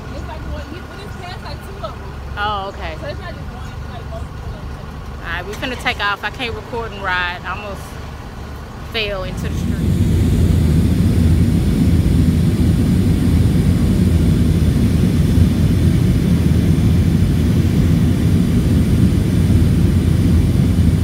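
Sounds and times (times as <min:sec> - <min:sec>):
wind buffeting microphone: 0:09.0 - 0:21.0.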